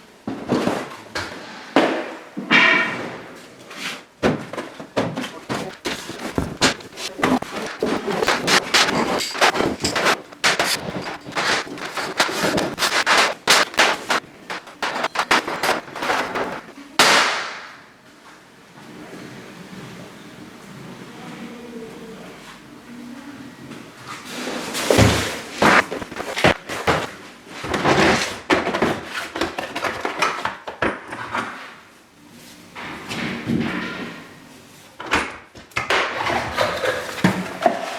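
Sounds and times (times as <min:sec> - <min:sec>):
rustling and scraping: 0:02.5 - 0:16.8, 0:24.0 - 0:30.4
sharp knocks and clatter: 0:04.2 - 0:17.7, 0:24.9 - 0:31.6.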